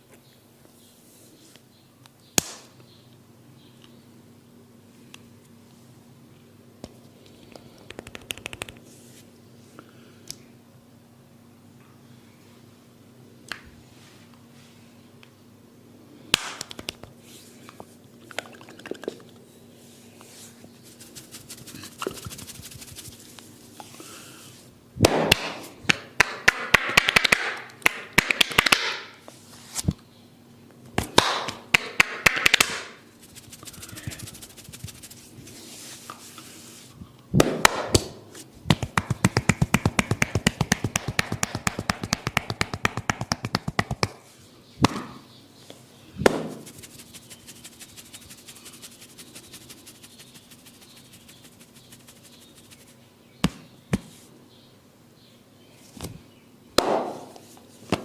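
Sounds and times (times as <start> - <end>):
tapping and rubbing on head: 7.9 - 8.8, 38.7 - 44.2.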